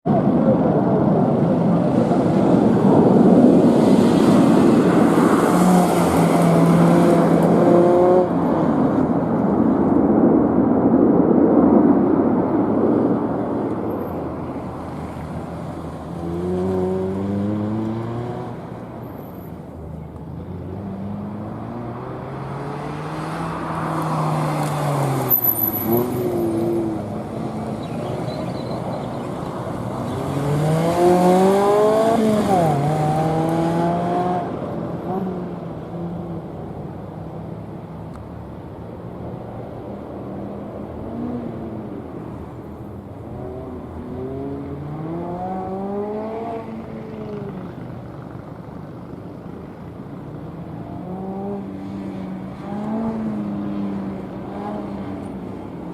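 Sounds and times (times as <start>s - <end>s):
car engine revving: 30.0s - 34.5s.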